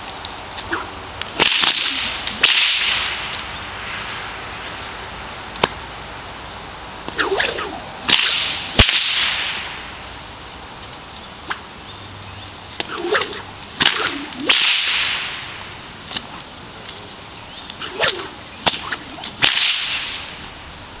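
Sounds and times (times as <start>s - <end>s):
bullwhip cracks: 0.6s - 3.5s, 7.1s - 9.9s, 12.8s - 16.3s, 17.7s - 20.4s
bullwhip swishing: 0.6s - 3.5s, 7.0s - 9.8s, 12.8s - 16.5s, 17.6s - 20.4s.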